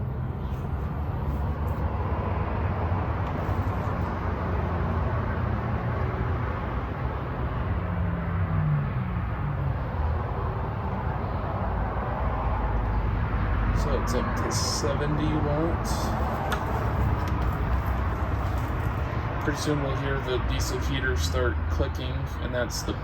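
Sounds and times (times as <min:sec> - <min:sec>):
heater blower fan whirring: 0:13.7 - 0:20.3.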